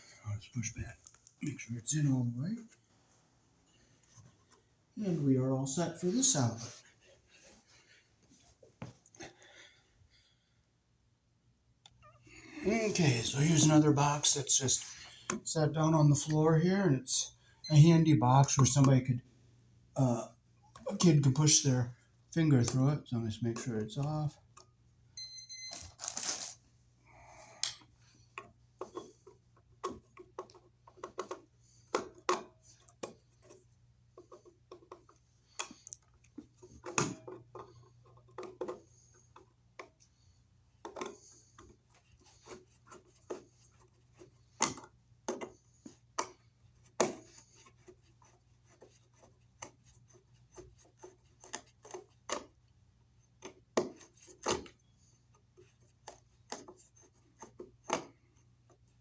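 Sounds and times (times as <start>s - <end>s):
clicks taps and scrapes: 27.6s - 59.0s.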